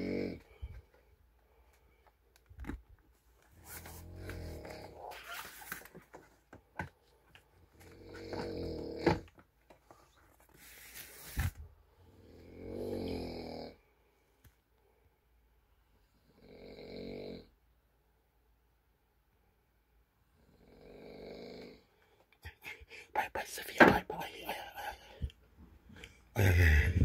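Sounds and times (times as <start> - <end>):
person snoring: 0.0 - 0.7, 3.8 - 5.4, 7.9 - 9.2, 12.1 - 13.8, 16.2 - 17.5, 20.4 - 21.9, 22.5 - 25.3, 26.4 - 27.0.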